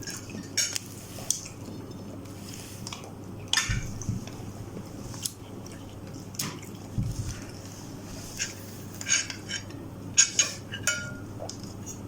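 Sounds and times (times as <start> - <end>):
utensils clinking against bowl: 8.3 - 12.0.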